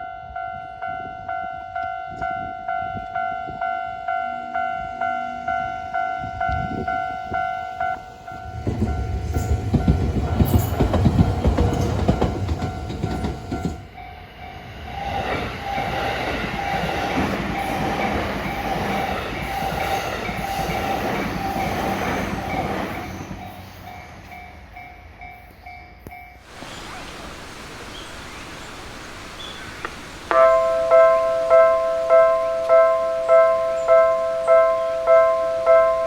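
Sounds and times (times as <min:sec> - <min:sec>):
level-crossing warning bell: 0:00.0 - 0:26.5, 0:30.3 - 0:36.0
train rumbling past: 0:00.0 - 0:36.0
train wheels clattering: 0:08.5 - 0:14.1, 0:15.0 - 0:25.5.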